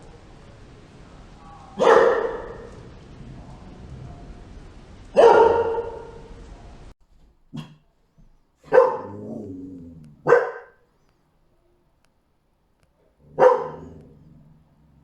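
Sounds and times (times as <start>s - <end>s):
dog barking: 1.6s - 2.8s, 5.1s - 6.3s, 7.5s - 7.8s, 8.6s - 10.8s, 13.2s - 14.3s.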